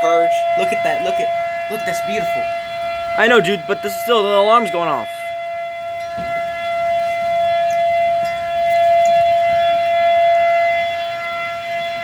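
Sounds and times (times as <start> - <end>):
tornado warning siren: 0.0 - 12.0.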